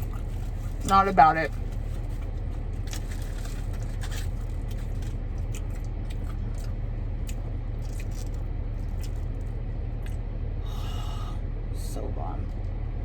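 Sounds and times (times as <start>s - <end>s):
car cabin rumble: 0.0s - 10.2s
chewing and crunching food: 0.0s - 10.2s.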